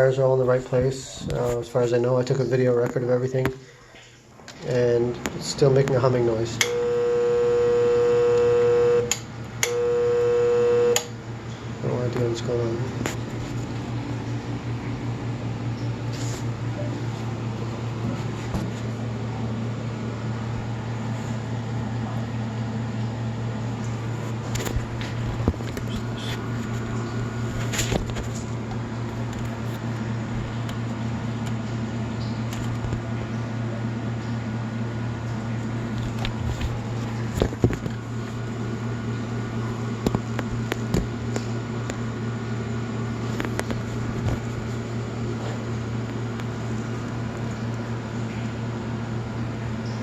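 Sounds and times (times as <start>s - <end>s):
electric motor humming: 6.2s - 11.2s.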